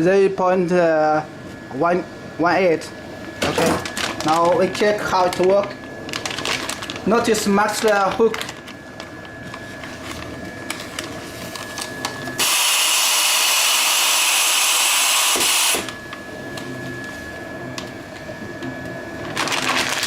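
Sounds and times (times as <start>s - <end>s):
band sealer whining: 7.0s - 20.0s.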